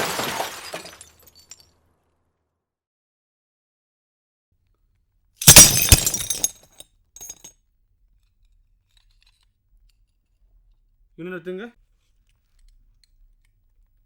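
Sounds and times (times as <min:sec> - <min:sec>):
glass shattering: 0:00.0 - 0:01.7, 0:05.4 - 0:06.6
tinkling glass shards: 0:05.4 - 0:06.5.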